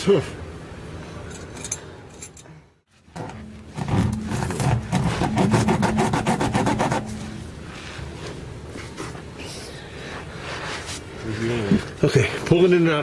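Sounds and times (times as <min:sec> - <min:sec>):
tool rasping through tire rubber: 0:03.8 - 0:07.2.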